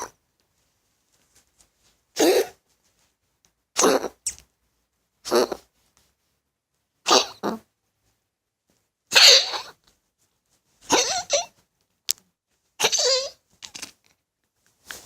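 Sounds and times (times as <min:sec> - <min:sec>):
pet coughing: 0:02.2 - 0:02.6, 0:03.8 - 0:04.2, 0:07.0 - 0:07.6, 0:09.1 - 0:09.8, 0:10.8 - 0:11.6, 0:12.8 - 0:13.4.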